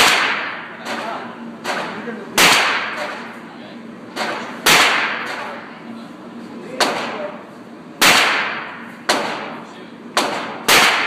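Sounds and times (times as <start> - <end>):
handgun shots with echo: 8.0 - 9.5, 10.2 - 11.0.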